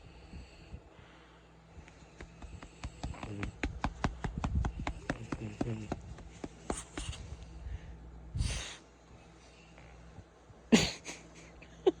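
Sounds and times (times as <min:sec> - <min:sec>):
dog snoring: 0:02.6 - 0:03.6.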